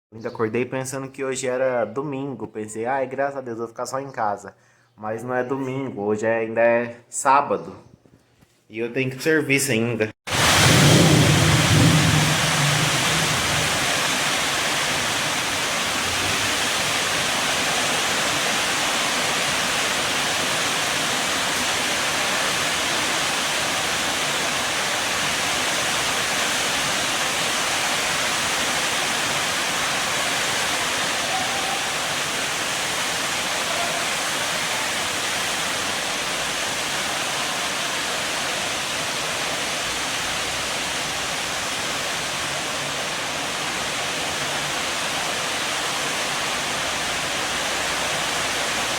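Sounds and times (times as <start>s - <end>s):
heavy rain falling: 10.3s - 48.9s.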